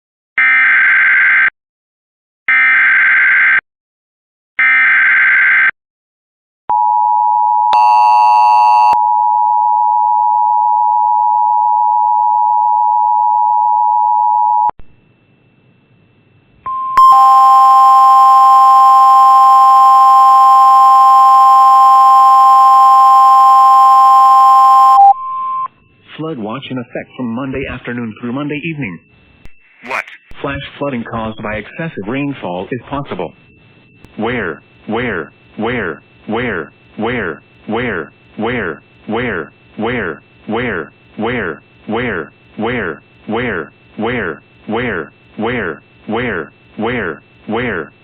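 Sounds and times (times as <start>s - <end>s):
harsh multi-tone attention signal: 7.7s - 9.0s, 16.7s - 25.7s, 29.6s - 30.4s.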